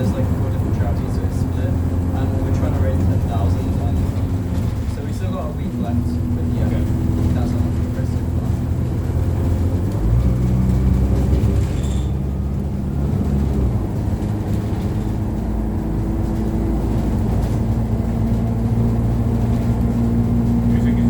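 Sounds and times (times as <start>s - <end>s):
bus engine running: 0.0s - 21.0s.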